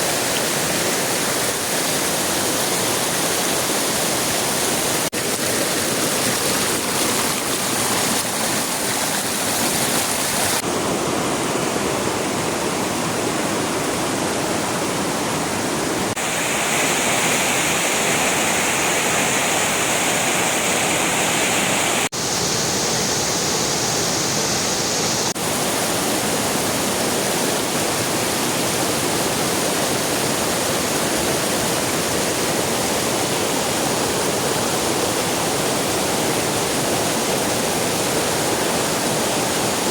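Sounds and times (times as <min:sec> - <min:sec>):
rushing river water: 0:00.0 - 0:39.9.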